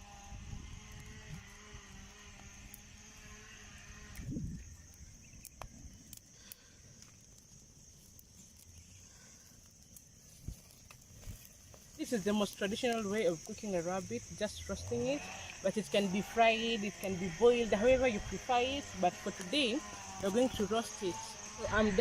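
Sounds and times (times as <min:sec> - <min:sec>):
distant motor hum: 0:00.0 - 0:05.2, 0:12.9 - 0:22.0
crickets chirring: 0:00.0 - 0:22.0.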